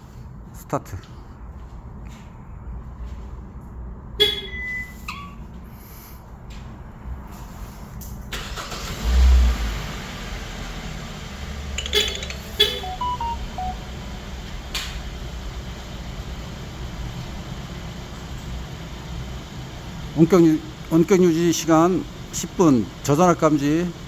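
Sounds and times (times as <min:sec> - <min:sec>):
car engine starting and idling: 0:01.6 - 0:24.0
faint beeps: 0:04.4 - 0:05.5, 0:11.9 - 0:14.0.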